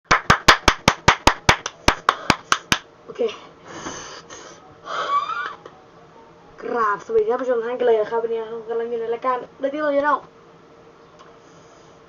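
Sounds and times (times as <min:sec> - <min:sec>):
sharp hand claps: 0:00.1 - 0:02.9.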